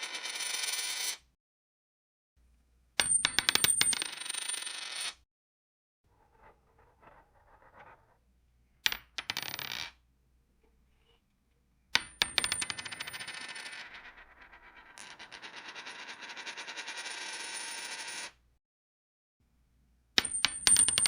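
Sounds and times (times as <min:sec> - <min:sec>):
coin dropping and clattering: 0:00.0 - 0:01.2, 0:03.0 - 0:05.2, 0:08.9 - 0:10.0, 0:12.0 - 0:18.4, 0:20.2 - 0:21.0
coin rattling with high ring: 0:00.0 - 0:01.2, 0:12.0 - 0:18.4, 0:20.2 - 0:21.0.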